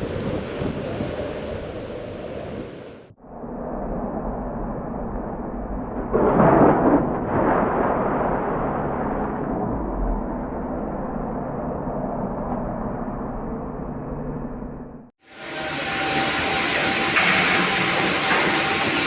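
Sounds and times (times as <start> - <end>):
heavy machinery rumbling: 5.5 - 19.0.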